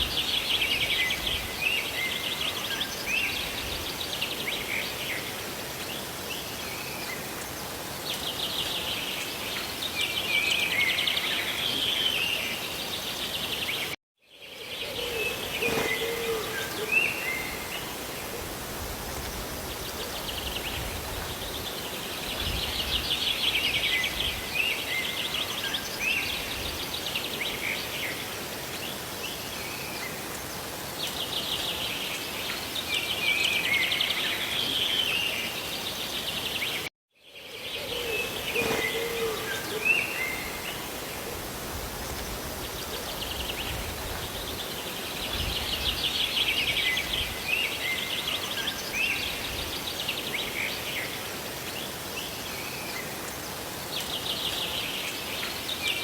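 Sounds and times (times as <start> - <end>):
songbirds trilling: 0.0 - 56.0
rain hissing: 38.3 - 55.9.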